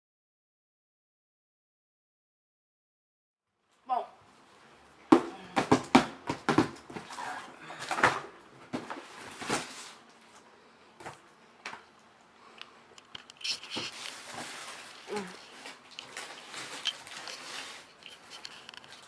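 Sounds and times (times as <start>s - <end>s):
cardboard boxes knocking: 5.1s - 7.1s.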